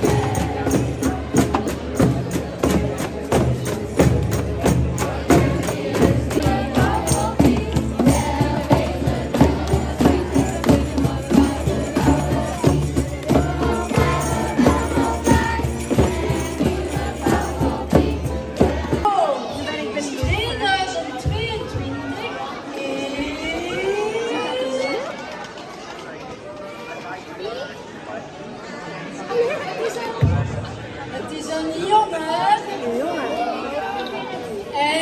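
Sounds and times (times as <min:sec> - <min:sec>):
fast sharp percussion beat: 0:00.0 - 0:19.1.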